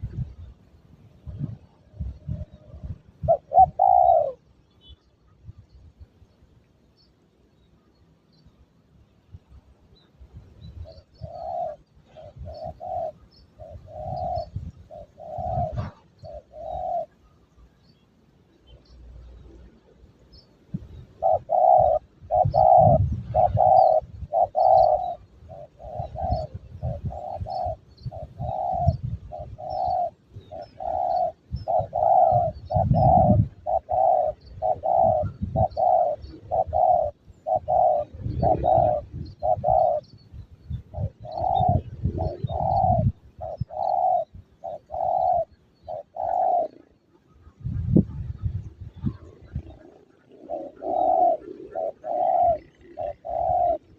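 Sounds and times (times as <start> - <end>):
wind on microphone: 0.0 - 4.6, 5.3 - 6.3, 9.2 - 17.6, 18.8 - 53.9
dove cooing: 0.0 - 5.0, 10.6 - 17.8, 18.7 - 53.9.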